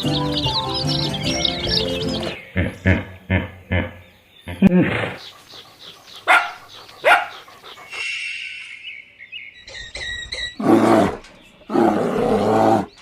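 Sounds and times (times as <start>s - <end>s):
animal calls: 0.0s - 8.9s.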